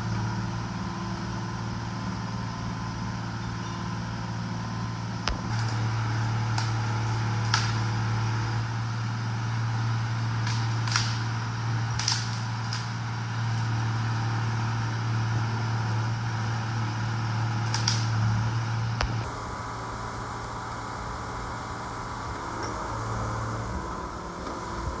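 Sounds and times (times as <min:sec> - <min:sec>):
excavator diesel engine: 0:00.0 - 0:25.0
sharp cracks: 0:05.3 - 0:08.7, 0:10.2 - 0:13.0, 0:17.5 - 0:19.4.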